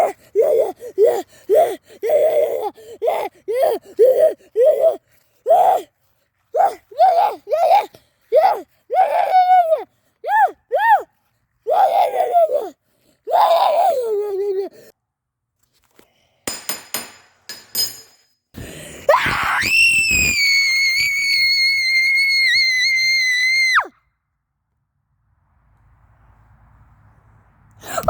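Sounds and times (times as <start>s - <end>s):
person high-pitched scream: 0.0s - 5.9s, 6.5s - 11.1s, 11.7s - 14.8s, 19.0s - 24.0s
person gliding cries: 0.0s - 14.9s.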